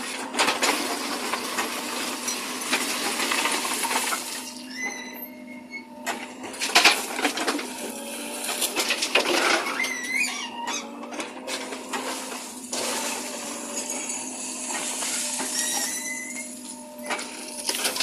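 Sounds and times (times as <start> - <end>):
backhoe engine humming: 0.0 - 18.0
brief squeaks: 4.7 - 5.9, 9.6 - 10.9.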